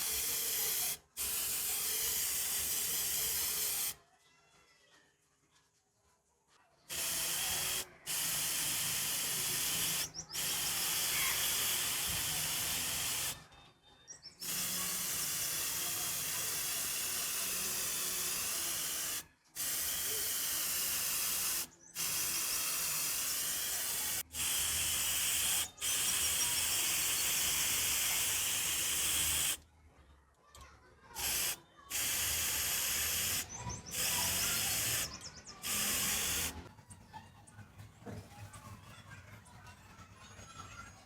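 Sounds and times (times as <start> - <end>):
aerosol spray hissing: 0.0 - 4.0, 6.9 - 13.4, 14.4 - 29.6, 31.2 - 36.6.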